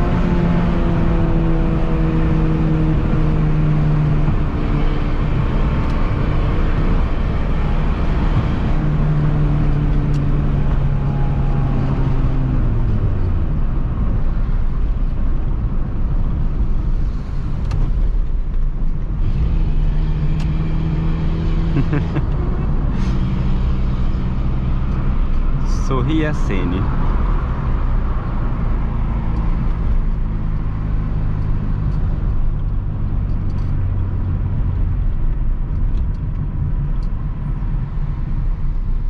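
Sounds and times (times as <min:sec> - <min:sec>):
car engine droning while driving: 0:00.0 - 0:39.0.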